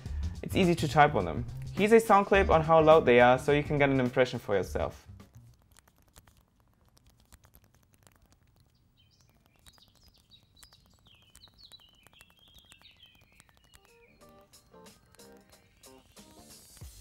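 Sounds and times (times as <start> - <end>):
keyboard keys clicking: 5.2 - 16.9
faint bird chirps: 8.0 - 16.7.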